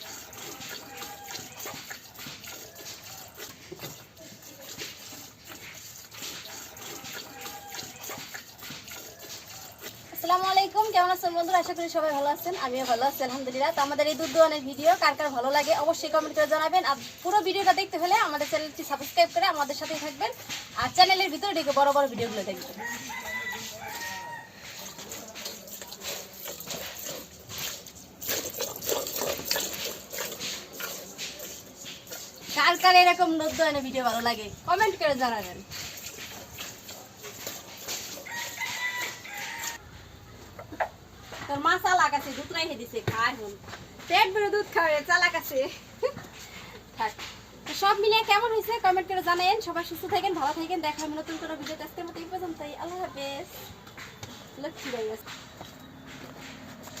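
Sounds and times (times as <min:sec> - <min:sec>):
milk squirting into a pail: 0:00.0 - 0:12.9, 0:13.8 - 0:39.8.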